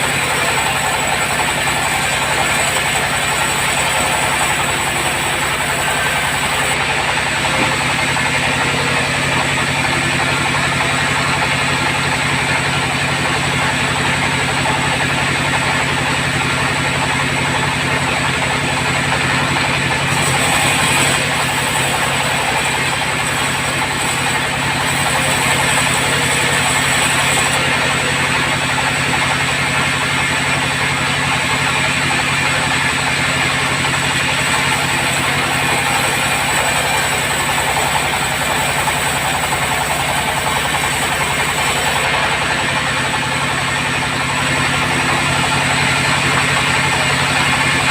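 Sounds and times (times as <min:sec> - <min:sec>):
saw cutting timber hiss: 0:00.0 - 0:12.1, 0:19.8 - 0:31.6, 0:33.8 - 0:44.0
sawmill engine humming: 0:00.0 - 0:47.9.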